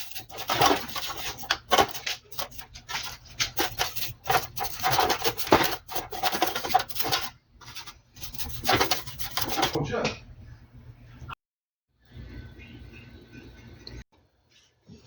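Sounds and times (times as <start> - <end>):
hand scraping gasket material: 0.0 - 9.8.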